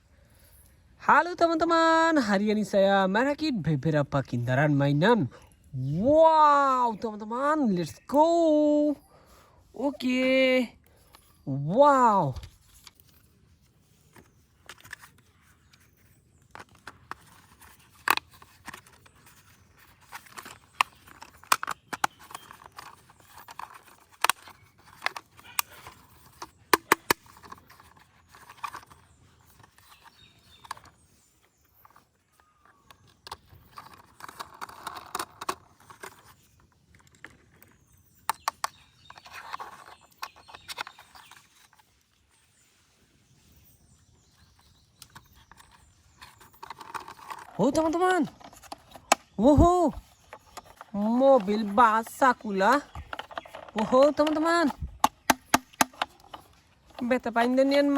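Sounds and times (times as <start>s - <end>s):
plastic rubbing or scraping: 12.0s - 42.7s, 44.2s - 57.9s
plastic parts clicking: 14.0s - 31.0s, 31.8s - 41.9s, 45.0s - 57.9s.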